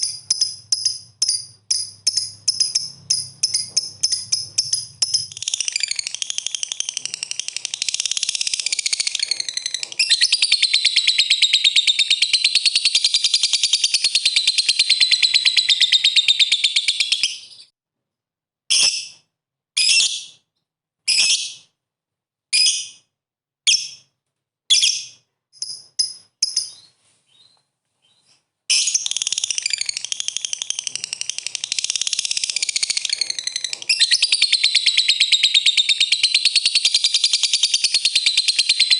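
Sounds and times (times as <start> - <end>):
lovebird chattering trill: 0.0 - 17.6, 28.7 - 38.9.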